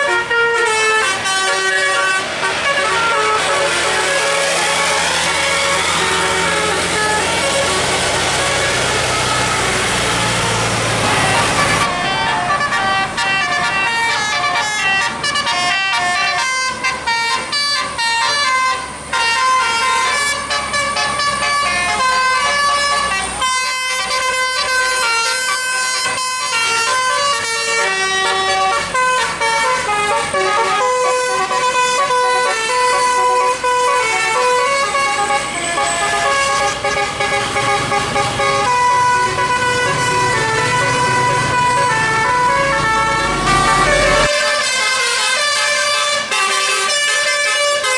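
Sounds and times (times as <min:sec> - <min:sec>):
musical air horn melody: 0:00.0 - 0:47.9
vehicle engine running: 0:00.7 - 0:15.3, 0:33.6 - 0:44.3.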